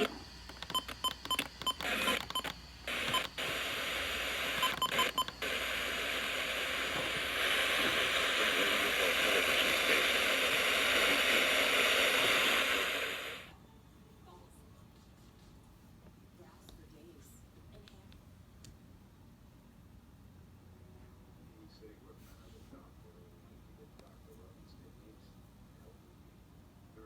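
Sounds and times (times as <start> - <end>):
radio static clicks and beeps: 0.0 - 13.4
radio static hiss: 0.0 - 13.5.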